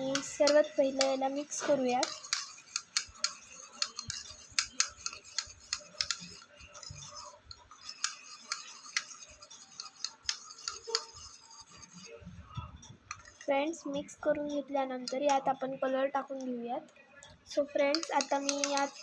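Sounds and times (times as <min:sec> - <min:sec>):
utensil clicking and scraping container: 0:00.0 - 0:12.2, 0:12.8 - 0:13.5, 0:17.9 - 0:19.0
utensil stirring glue: 0:00.0 - 0:16.5, 0:17.2 - 0:19.0.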